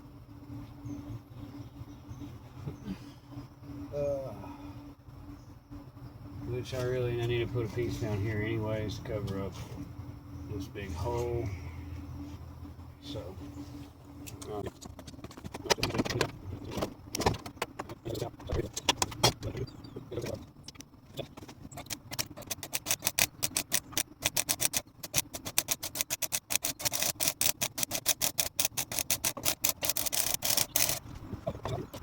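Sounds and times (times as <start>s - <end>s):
welding arc crackling: 21.6s - 32.0s.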